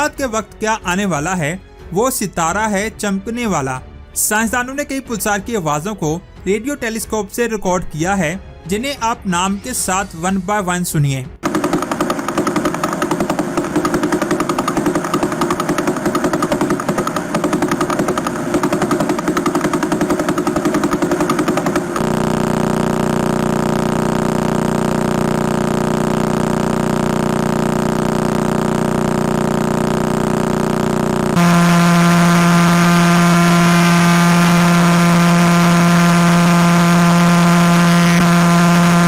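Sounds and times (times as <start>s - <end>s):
pulsar signal pulses: 11.4s - 39.0s.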